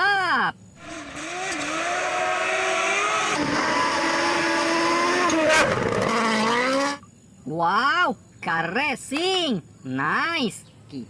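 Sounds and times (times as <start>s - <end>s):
racing car engine revving: 0.8s - 7.0s.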